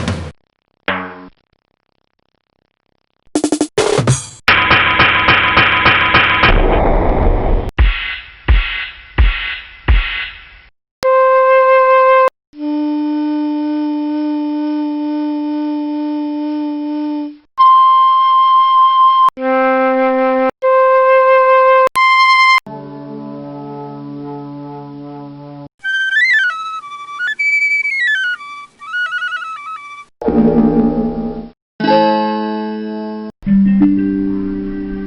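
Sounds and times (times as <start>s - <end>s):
drum hits: 0.0s - 0.4s, 7.8s - 10.6s
flute-like wind notes: 25.8s - 30.1s.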